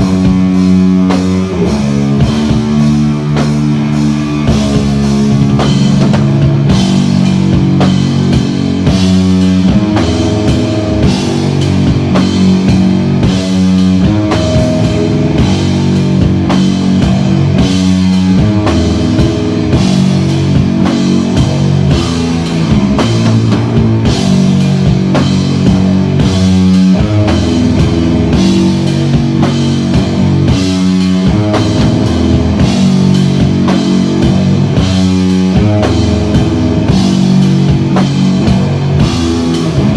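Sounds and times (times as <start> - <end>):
drums and cymbals: 0.0 - 39.9
electric guitar riff: 0.0 - 39.9.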